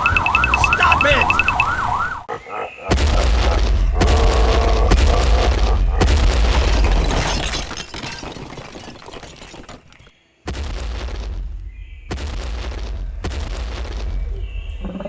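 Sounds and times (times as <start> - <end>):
loud boom with deep rumble: 2.9 - 7.2, 10.5 - 15.0.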